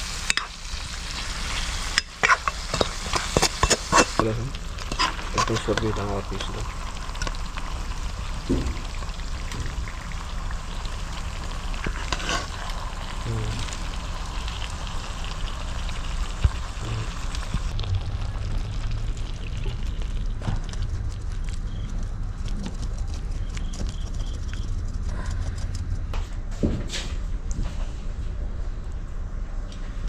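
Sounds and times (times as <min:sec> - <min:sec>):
curry sizzling in a pan: 0:00.0 - 0:20.4.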